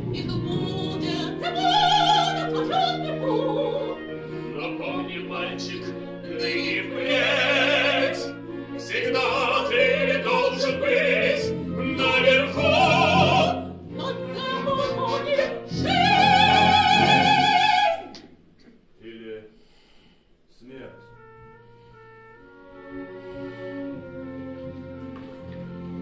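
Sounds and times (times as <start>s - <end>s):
operatic singing: 0.0s - 18.3s
instrumental accompaniment: 20.6s - 26.0s.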